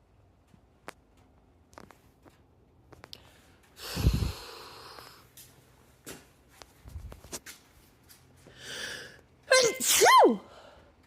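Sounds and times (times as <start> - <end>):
woman breathing: 3.1 - 5.4, 8.4 - 9.3, 10.5 - 11.0
woman sneezing: 9.5 - 10.6.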